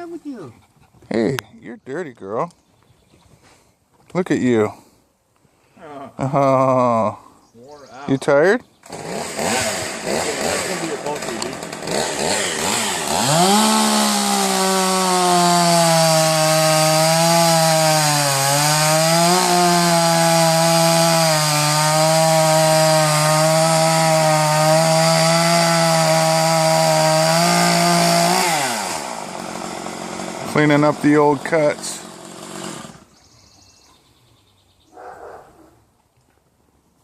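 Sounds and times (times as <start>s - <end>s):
chainsaw cutting wood: 8.8s - 33.1s.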